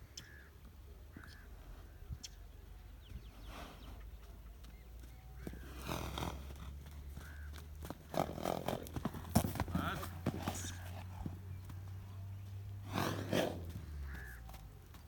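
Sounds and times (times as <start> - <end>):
crows cawing: 0.2 - 0.5, 7.0 - 8.0, 13.2 - 14.6.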